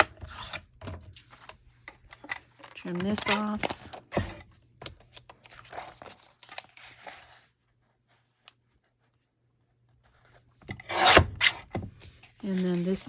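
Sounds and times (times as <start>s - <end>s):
paper cutting and rustling: 2.1s - 4.3s.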